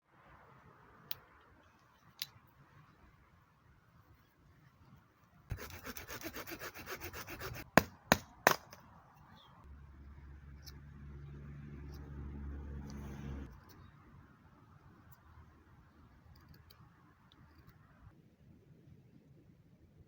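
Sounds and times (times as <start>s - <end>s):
hand saw cutting wood: 5.5s - 7.9s.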